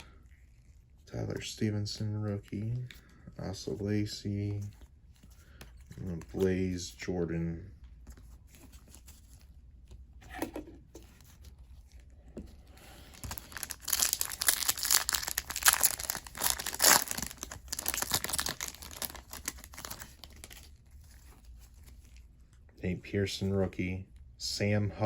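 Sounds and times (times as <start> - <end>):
foil wrapper tearing and crinkling: 13.1 - 21.9.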